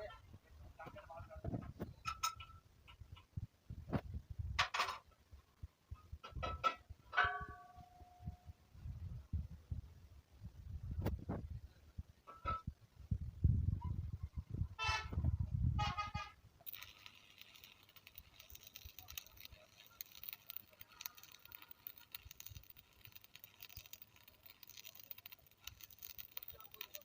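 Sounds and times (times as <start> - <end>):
light ticking: 16.7 - 27.0.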